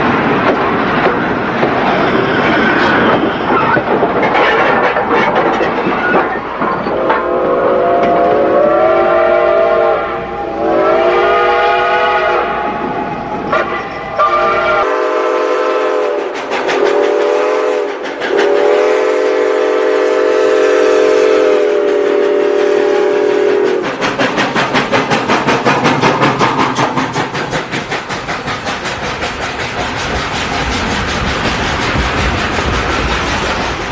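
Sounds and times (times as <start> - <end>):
train wheels clattering over rail joints: 0.0 - 8.4, 16.0 - 19.4, 21.8 - 33.9
train horn blasts: 7.0 - 13.0, 13.6 - 23.8.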